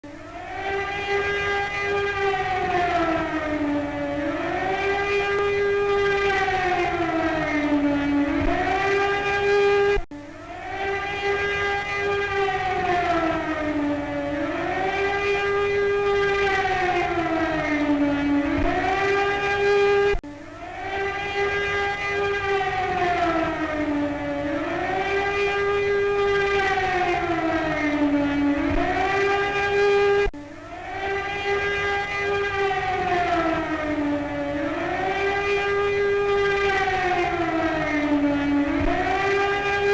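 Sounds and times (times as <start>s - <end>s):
air-raid siren wailing: 0.0s - 39.9s.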